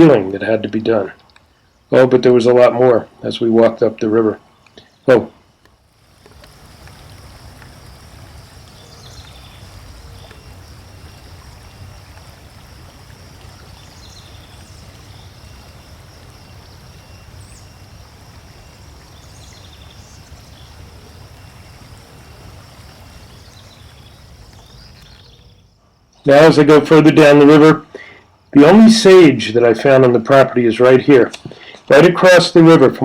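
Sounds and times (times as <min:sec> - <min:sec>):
high insect hum: 0:00.0 - 0:33.0
river flowing: 0:05.5 - 0:25.2
bird chirps: 0:08.6 - 0:10.6, 0:13.5 - 0:17.9, 0:23.1 - 0:26.3.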